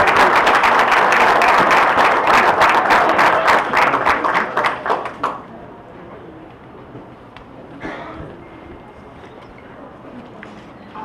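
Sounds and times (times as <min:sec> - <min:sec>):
audience applauding: 0:00.0 - 0:05.4.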